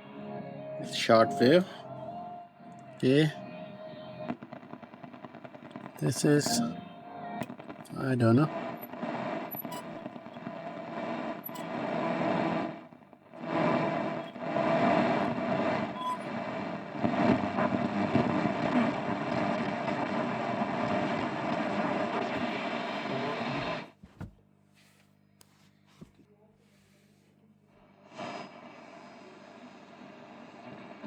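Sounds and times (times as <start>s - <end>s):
radio static while tuning: 0.8s - 1.8s, 3.0s - 24.0s.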